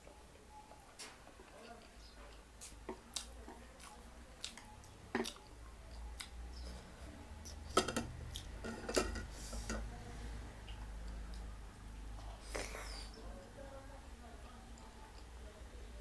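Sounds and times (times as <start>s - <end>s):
chewing: 1.0s - 9.2s
utensils clinking on dishes: 7.7s - 9.8s.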